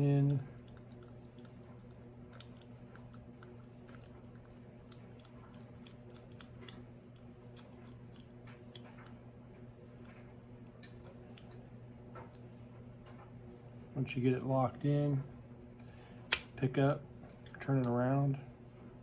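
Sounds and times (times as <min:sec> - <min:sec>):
faint steady hum: 0:00.0 - 0:19.0
padlock dials clicking: 0:00.2 - 0:09.2.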